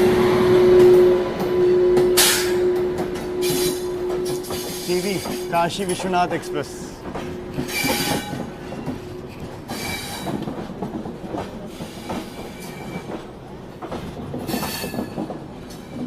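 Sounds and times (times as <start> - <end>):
shrill wheel squeals: 0.6 - 5.6, 7.6 - 8.9, 9.7 - 10.3, 14.5 - 15.2
train wheels clattering over joints: 0.8 - 16.0.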